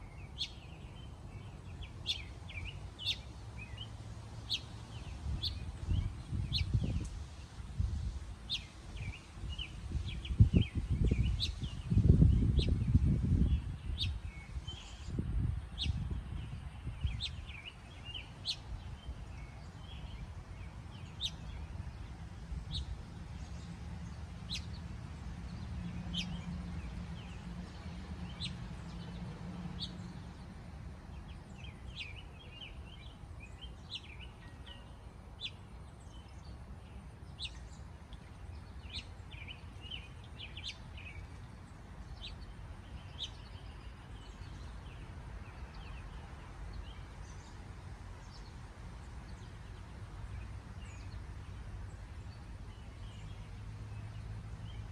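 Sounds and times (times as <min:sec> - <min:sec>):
small birds chirping: 0:00.0 - 0:54.9.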